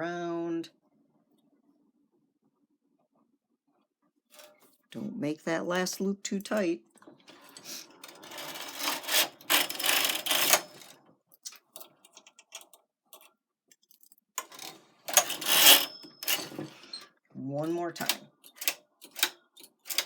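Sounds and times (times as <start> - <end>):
knitting machine carriage clattering: 7.1 - 11.0, 14.4 - 16.9, 17.6 - 20.0.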